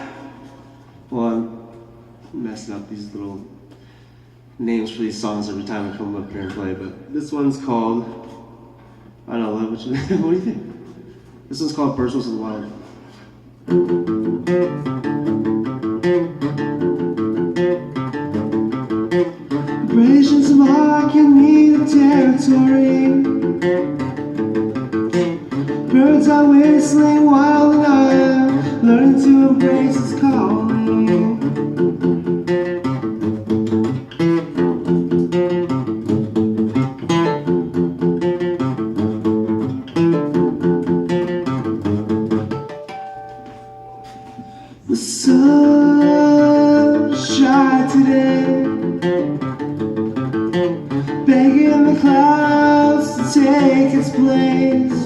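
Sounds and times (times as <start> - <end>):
guitar picking and strumming: 12.7 - 55.0.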